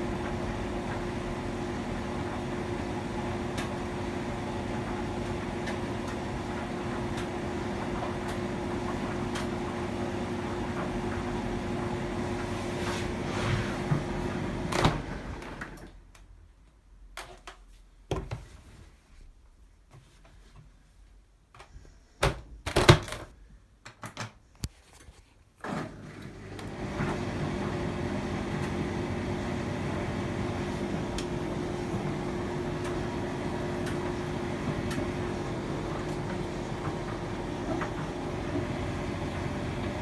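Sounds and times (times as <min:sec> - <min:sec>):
tumble dryer running: 0:00.0 - 0:15.9, 0:25.6 - 0:40.0.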